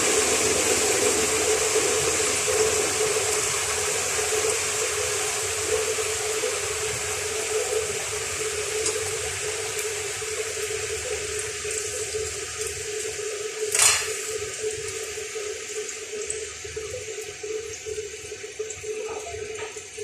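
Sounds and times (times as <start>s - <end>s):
tap running into sink: 13.6s - 14.4s.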